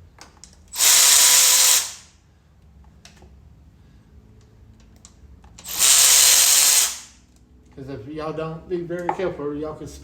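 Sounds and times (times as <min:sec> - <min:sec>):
faint clicks of bolt and tool: 0:00.1 - 0:00.7, 0:02.6 - 0:03.4, 0:04.3 - 0:05.7
cordless power tool spinning: 0:00.7 - 0:02.1, 0:05.6 - 0:07.1.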